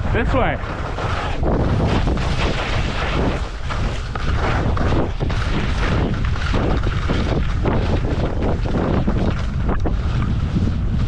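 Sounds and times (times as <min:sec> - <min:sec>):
wind buffeting microphone: 0:00.0 - 0:11.0.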